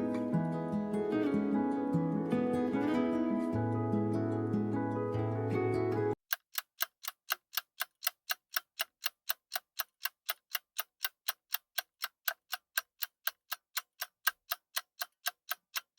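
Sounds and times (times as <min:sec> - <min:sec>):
clock ticking: 0:06.3 - 0:15.9.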